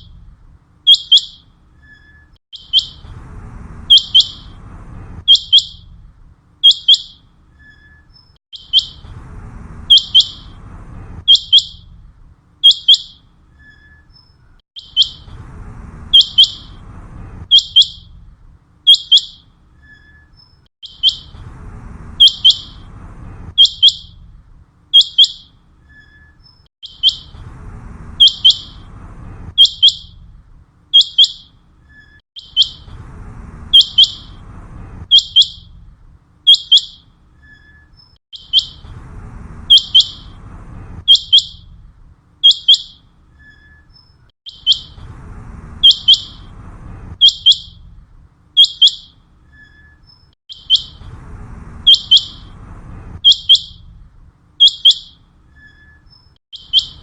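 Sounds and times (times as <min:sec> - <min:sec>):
quail whistled calls: 0:00.9 - 0:03.1, 0:03.9 - 0:04.6, 0:05.2 - 0:05.9, 0:06.6 - 0:09.1, 0:09.9 - 0:10.6, 0:11.2 - 0:11.9, 0:12.6 - 0:15.4, 0:16.1 - 0:16.8, 0:17.5 - 0:18.1, 0:18.9 - 0:21.4, 0:22.2 - 0:22.9, 0:23.5 - 0:24.2, 0:24.9 - 0:27.4, 0:28.2 - 0:28.9, 0:29.5 - 0:30.2, 0:30.9 - 0:32.9, 0:33.7 - 0:35.8, 0:36.5 - 0:38.9, 0:39.6 - 0:40.4, 0:41.0 - 0:41.7, 0:42.4 - 0:45.0, 0:45.8 - 0:47.9, 0:48.6 - 0:51.1, 0:51.8 - 0:53.9, 0:54.6 - 0:57.0.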